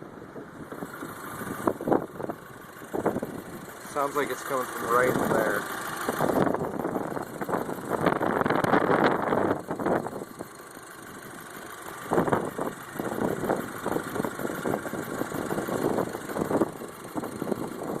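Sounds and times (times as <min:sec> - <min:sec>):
car engine idling: 0:00.0 - 0:18.0
light mechanical ticking: 0:00.9 - 0:18.0.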